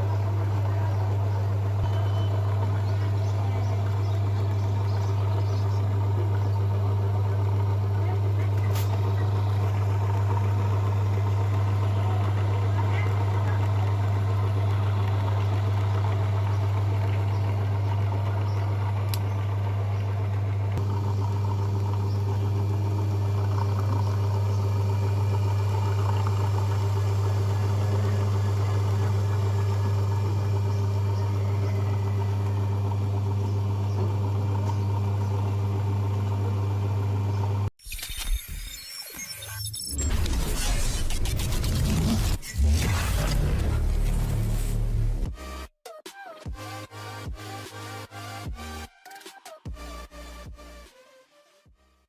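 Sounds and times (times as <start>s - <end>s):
electric motor humming: 0.0s - 37.7s.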